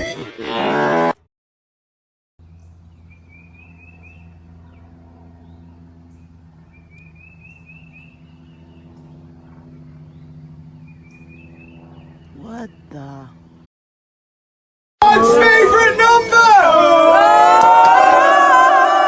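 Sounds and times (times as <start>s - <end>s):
bird chirping: 2.4s - 13.6s
low hum: 2.4s - 13.7s.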